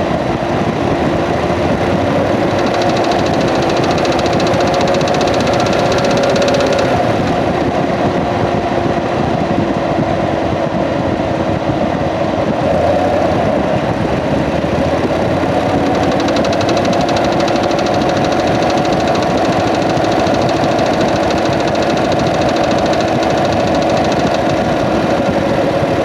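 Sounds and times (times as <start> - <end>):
engine running: 0.0 - 9.8, 10.6 - 26.0
rapid even ticking: 0.7 - 7.4, 14.2 - 26.0.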